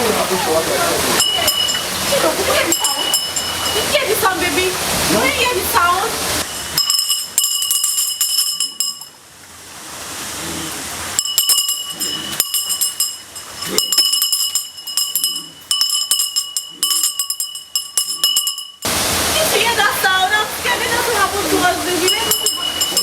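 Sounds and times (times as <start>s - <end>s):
metallic clinking and ringing: 1.2s - 4.0s, 6.6s - 9.2s, 11.2s - 18.9s, 22.0s - 23.0s.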